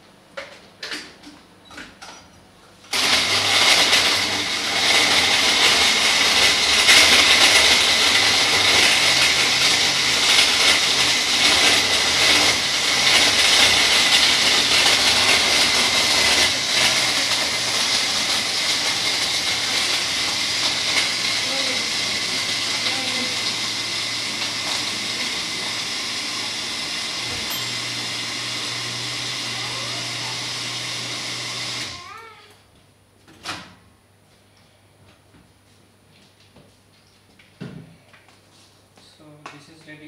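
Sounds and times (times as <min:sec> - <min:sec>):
electric blender running: 0:02.9 - 0:32.3.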